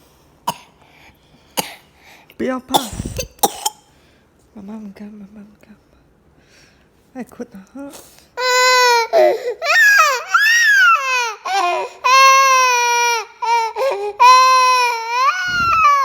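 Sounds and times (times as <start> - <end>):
child catching breath: 2.9 - 3.4
young child crying: 14.2 - 16.0.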